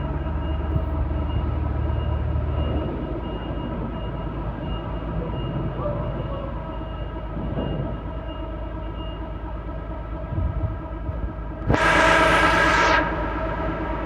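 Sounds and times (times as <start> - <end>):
heavy machinery rumble and hum: 0.0 - 14.0
faint high whine: 11.7 - 14.0.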